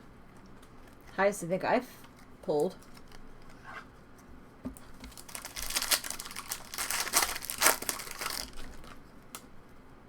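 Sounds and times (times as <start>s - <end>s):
plastic wrapper crinkling and tearing: 2.0s - 3.6s, 5.1s - 9.0s.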